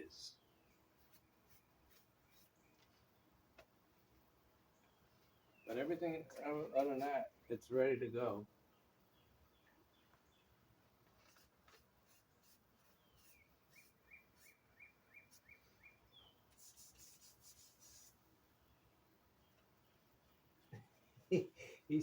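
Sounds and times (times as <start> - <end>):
bird chirping: 4.6 - 8.0, 8.6 - 10.6, 12.4 - 22.0
faint scratchy rubbing: 5.7 - 7.3, 11.0 - 14.6, 16.5 - 18.2.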